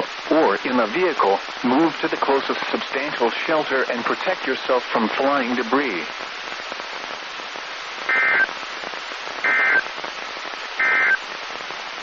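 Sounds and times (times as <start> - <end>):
radio static hiss: 0.0 - 12.0
digital data tone bursts: 8.1 - 8.5, 9.4 - 9.8, 10.8 - 11.2.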